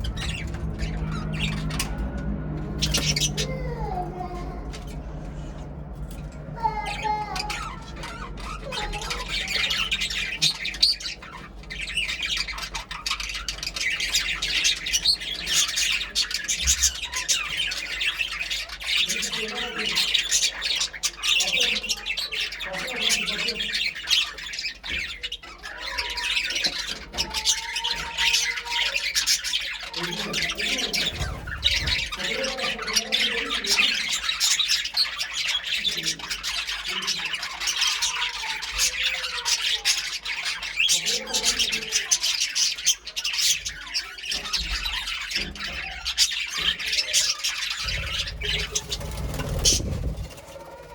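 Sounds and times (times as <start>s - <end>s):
budgerigars chirping and twittering: 0.0s - 50.9s.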